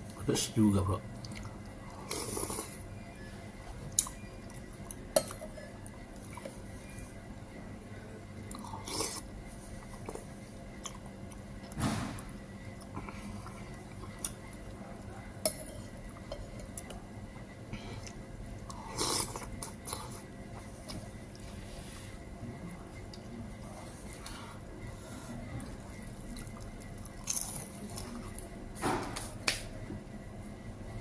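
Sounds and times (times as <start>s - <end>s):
chewing and crunching: 1.2s - 2.8s, 8.5s - 11.8s, 12.7s - 17.0s, 25.4s - 28.5s.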